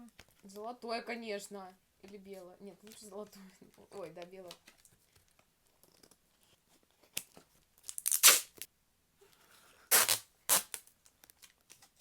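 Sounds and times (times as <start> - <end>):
wrapping paper tearing: 7.9 - 8.7, 9.9 - 10.8.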